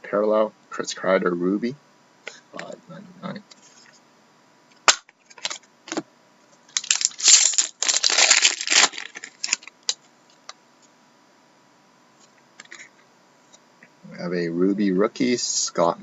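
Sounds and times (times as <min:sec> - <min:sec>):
wrapper crinkling: 0:06.7 - 0:10.0.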